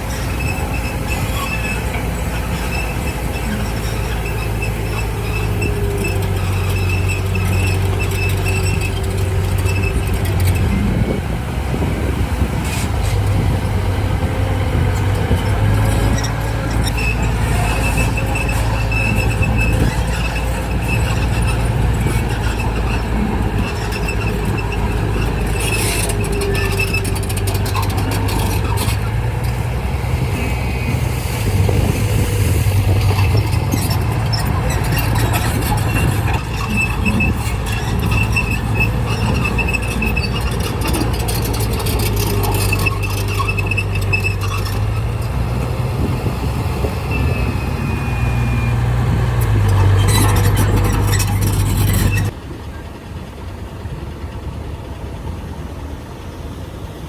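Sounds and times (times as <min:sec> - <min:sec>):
steel tracks squealing: 0:00.0 - 0:55.7
bulldozer diesel engine running: 0:00.0 - 0:57.0.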